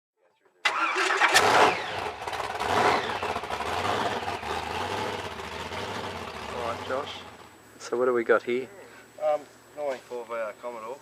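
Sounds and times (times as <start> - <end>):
engine starting with a crack: 0.6 - 2.3
engine cranking: 0.7 - 7.5
engine idling: 0.7 - 7.7.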